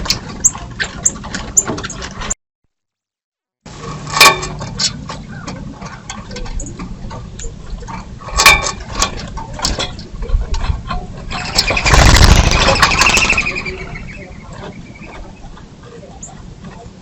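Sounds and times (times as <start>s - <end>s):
bird calls: 4.8s - 6.8s, 11.3s - 17.0s
rushing rustling of wings: 11.3s - 15.1s.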